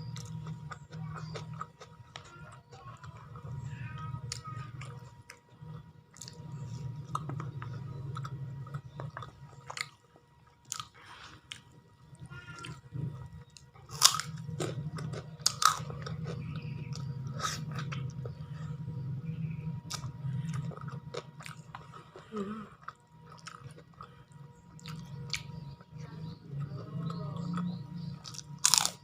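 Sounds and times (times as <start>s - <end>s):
wet chewing: 4.2s - 19.1s, 19.7s - 29.0s
sharp crunches of food: 13.5s - 18.1s, 28.2s - 29.0s.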